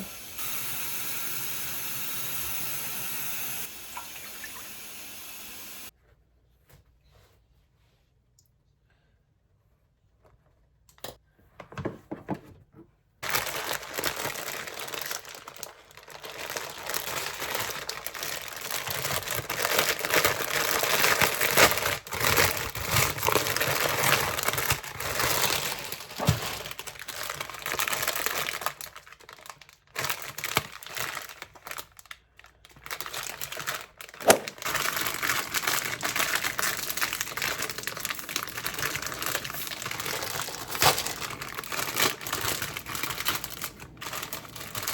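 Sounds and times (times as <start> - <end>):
crinkly packaging crumpled: 13.2 - 44.9.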